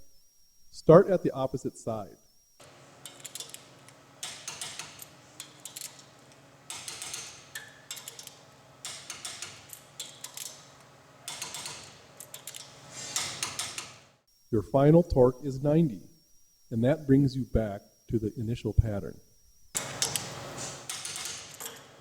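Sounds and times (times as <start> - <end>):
ratcheting torque wrench clicking: 6.7 - 10.7.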